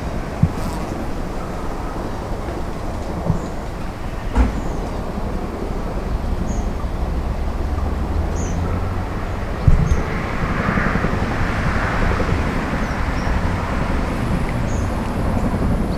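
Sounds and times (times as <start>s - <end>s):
helicopter engine noise: 9.3s - 15.9s
helicopter rotor blades beating: 9.3s - 15.9s.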